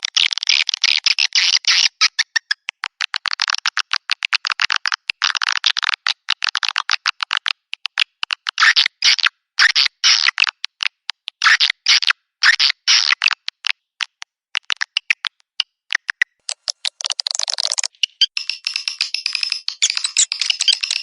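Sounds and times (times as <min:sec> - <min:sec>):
buzzy twittering bird chirps: 0:19.7 - 0:21.0.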